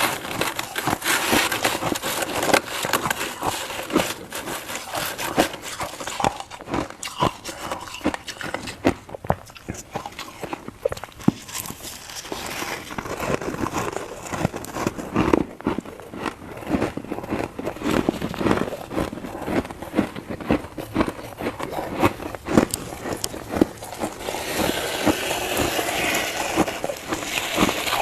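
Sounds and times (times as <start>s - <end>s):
frost being chewed crunching: 0.0s - 28.0s.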